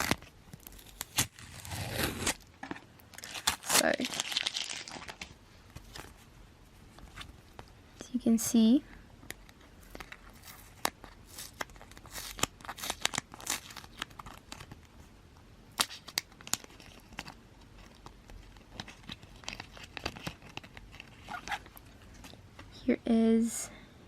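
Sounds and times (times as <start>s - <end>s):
packaging crinkling: 0.0s - 6.1s, 9.4s - 14.9s, 15.8s - 22.4s.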